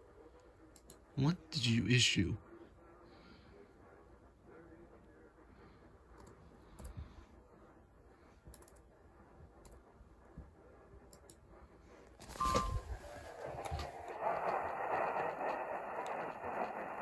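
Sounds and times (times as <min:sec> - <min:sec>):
faint scattered clicks: 0:00.4 - 0:01.1, 0:06.1 - 0:07.2, 0:08.4 - 0:08.9, 0:11.0 - 0:11.5
two-note beep: 0:12.4 - 0:12.9.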